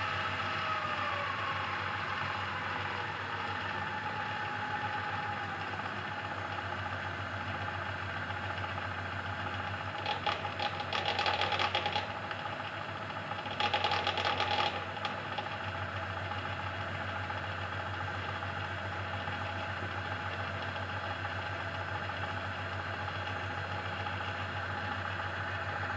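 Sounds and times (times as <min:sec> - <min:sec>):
belt drive rattling: 0:10.0 - 0:12.4.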